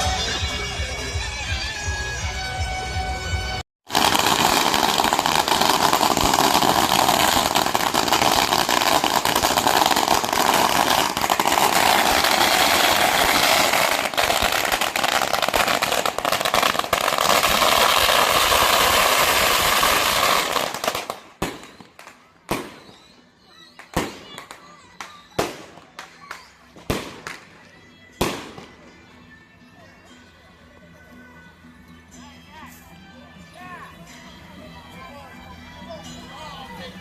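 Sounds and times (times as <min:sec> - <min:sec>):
firecrackers crackling: 0:03.9 - 0:29.1.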